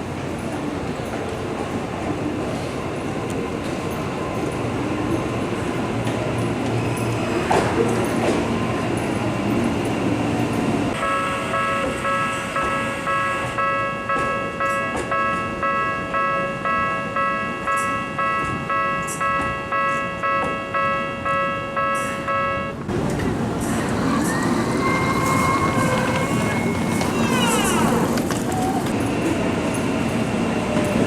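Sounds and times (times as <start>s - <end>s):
level crossing bells clanging: 10.5s - 22.7s.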